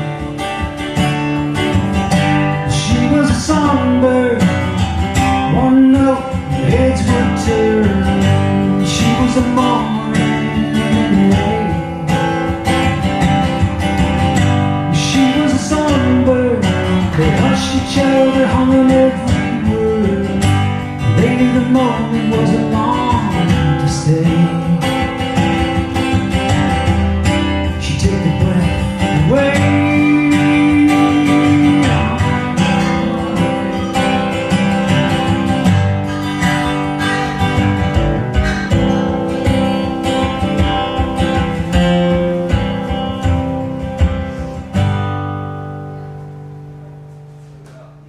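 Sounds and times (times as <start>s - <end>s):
acoustic guitar strummed and picked: 0.0s - 48.0s.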